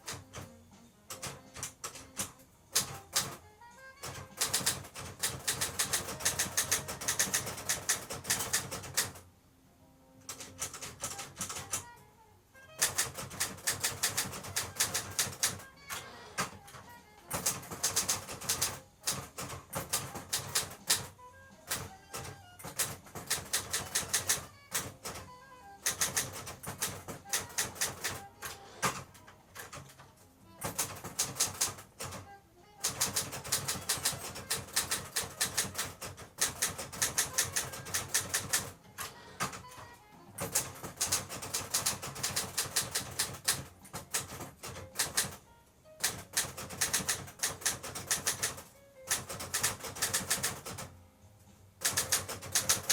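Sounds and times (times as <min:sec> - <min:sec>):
manual typewriter typing: 0:00.0 - 0:09.2, 0:10.3 - 0:12.0, 0:12.7 - 0:50.9, 0:51.8 - 0:52.9.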